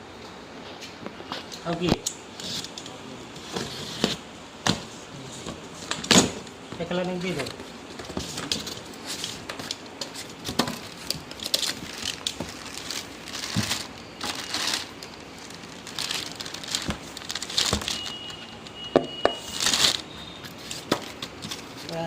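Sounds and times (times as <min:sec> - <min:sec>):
packaging crinkling and rustling: 0:04.8 - 0:22.0.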